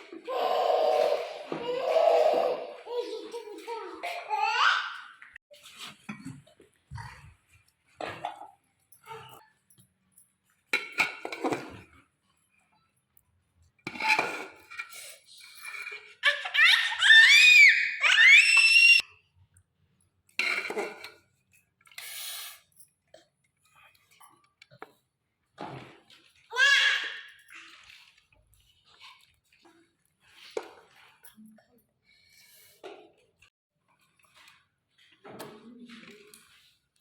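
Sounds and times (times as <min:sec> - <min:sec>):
child squealing and laughing: 0:00.3 - 0:03.2, 0:16.2 - 0:19.0.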